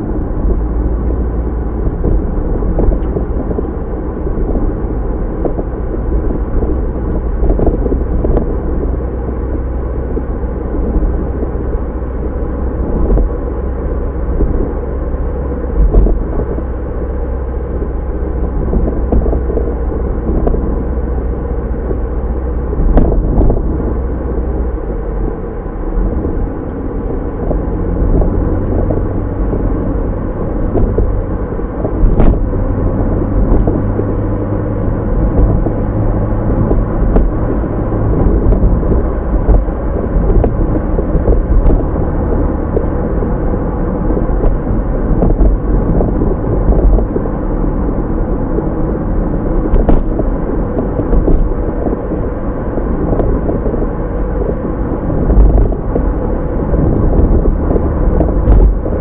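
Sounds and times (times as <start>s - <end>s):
car engine rumble: 0.0s - 59.0s
tyre noise: 21.8s - 59.0s.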